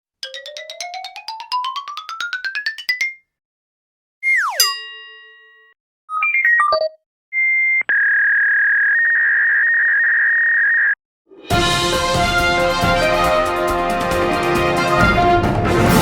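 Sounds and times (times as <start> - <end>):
short chime notes: 4.6 - 5.7
loud music: 11.4 - 16.0.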